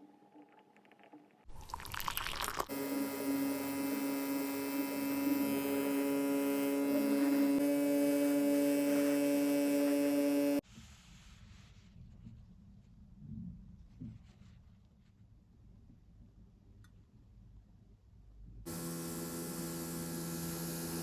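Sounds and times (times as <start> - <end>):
small electric motor humming: 2.7 - 10.6, 18.7 - 21.0.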